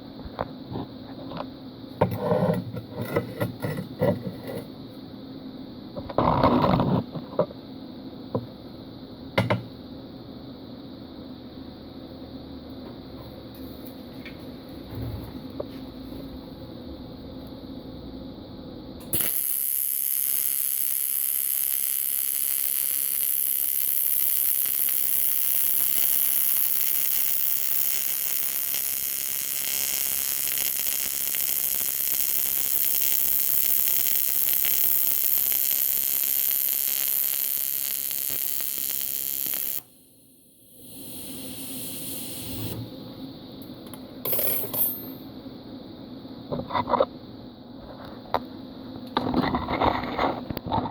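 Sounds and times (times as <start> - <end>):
welding arc buzzing hiss: 1.9 - 5.0, 19.0 - 45.2.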